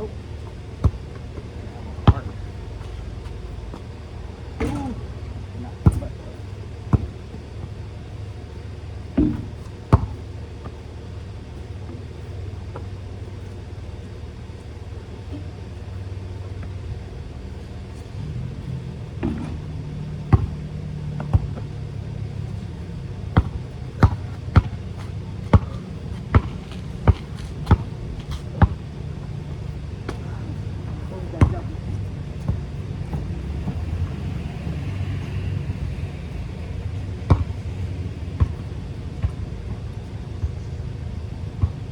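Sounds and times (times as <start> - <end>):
basketball bouncing on court: 0.0 - 35.0, 36.0 - 41.9
steady low hum: 0.0 - 41.9.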